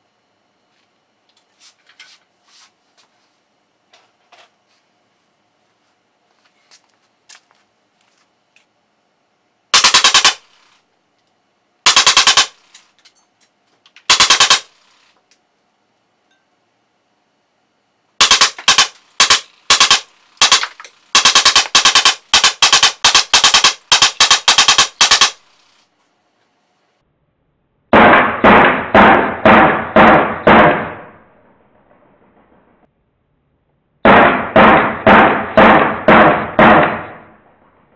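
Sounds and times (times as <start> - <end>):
bb gun firing bursts: 9.7 - 10.8, 11.8 - 12.7, 14.0 - 15.1, 18.2 - 25.8, 27.9 - 31.2, 34.0 - 37.3.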